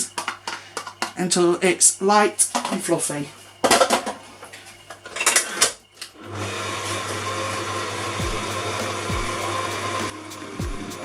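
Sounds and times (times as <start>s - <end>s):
electric stand mixer running: 6.2s - 11.0s
hip hop music: 8.0s - 11.0s.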